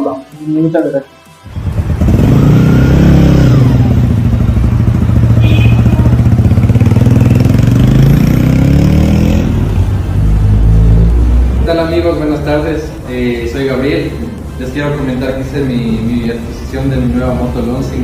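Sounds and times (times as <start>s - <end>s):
motorcycle engine revving: 1.4s - 12.0s.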